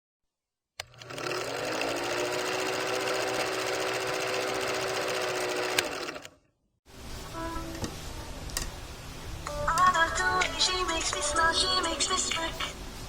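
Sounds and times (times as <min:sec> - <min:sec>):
motor starting click: 0:00.8 - 0:01.6, 0:05.5 - 0:06.4
small motor rattling: 0:00.8 - 0:06.4.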